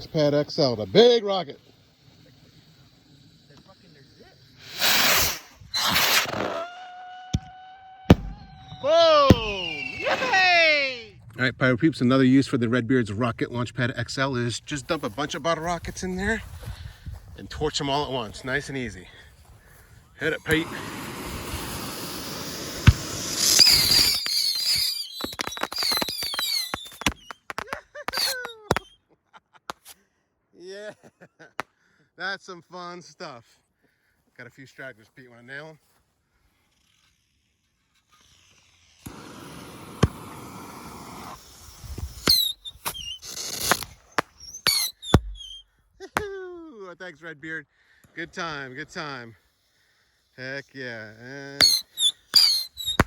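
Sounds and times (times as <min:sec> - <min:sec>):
rockets whistling: 0:00.0 - 0:11.1, 0:20.2 - 0:29.0, 0:38.1 - 0:45.8, 0:51.5 - 0:53.0
rockets bursting with sharp cracks: 0:00.0 - 0:11.3, 0:20.2 - 0:29.0, 0:38.1 - 0:45.6, 0:51.4 - 0:53.0.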